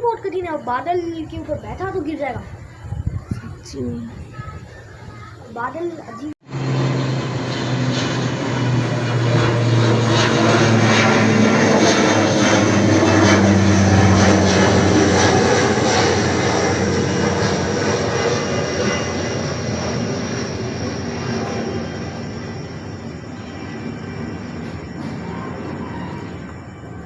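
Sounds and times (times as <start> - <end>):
airplane engine drone overhead: 0.0 - 27.0.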